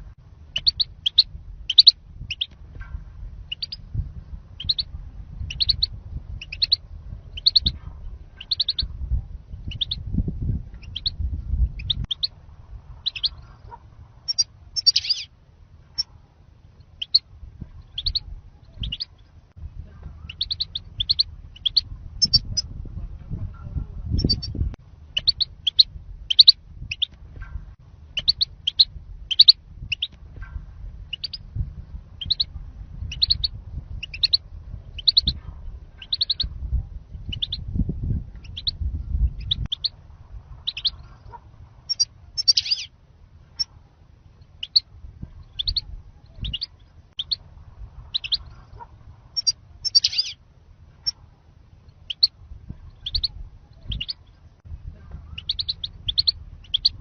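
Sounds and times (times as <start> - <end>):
low rumble: 0.0 - 57.0
goldfinch short sharp calls: 41.9 - 42.9, 49.4 - 50.4.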